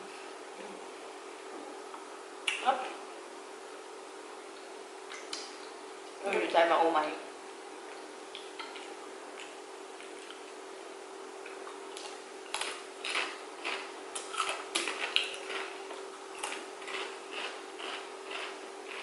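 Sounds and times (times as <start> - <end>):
crunchy biting and chewing: 11.5 - 19.0.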